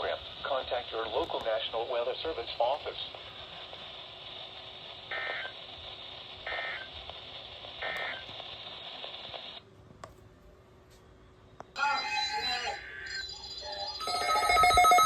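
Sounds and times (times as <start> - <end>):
radio static: 0.0 - 9.6.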